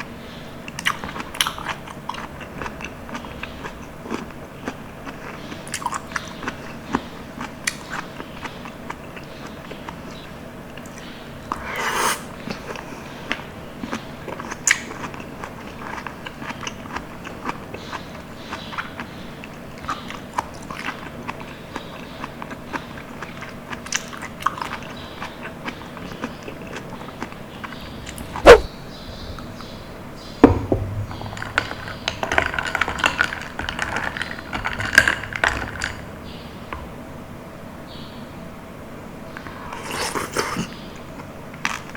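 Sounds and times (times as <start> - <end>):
chewing juicy fruit: 0.6 - 29.7
sticky mouth clicks: 28.4 - 28.7.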